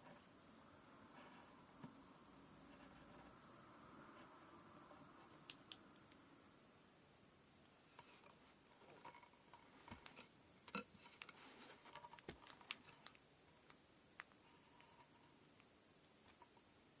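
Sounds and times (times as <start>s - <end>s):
faint clicks and taps: 7.6s - 16.7s
hands rustling thread: 7.6s - 16.8s.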